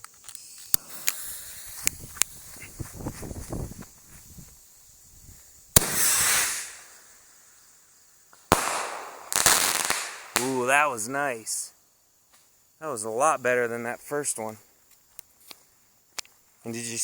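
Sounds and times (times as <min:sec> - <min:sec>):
sputtering firework fuse: 0:00.0 - 0:11.1
rushing hiss of firework motor: 0:00.3 - 0:03.7, 0:05.8 - 0:07.1
sharp firework bangs: 0:05.8 - 0:07.2, 0:08.5 - 0:11.0.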